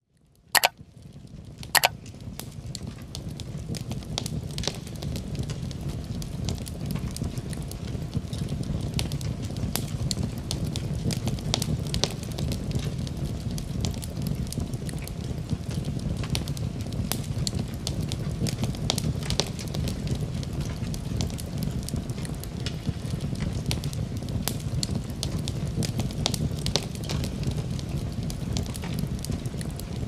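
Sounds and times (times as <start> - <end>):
fire rumbling and crackling: 0.2 - 30.0
sharp pops of fire: 9.7 - 30.0.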